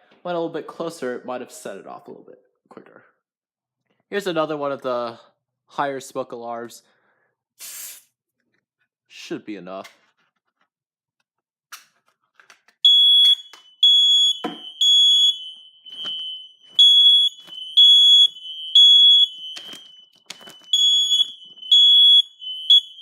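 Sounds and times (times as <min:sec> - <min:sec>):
smoke alarm beeping: 0:12.8 - 0:23.0.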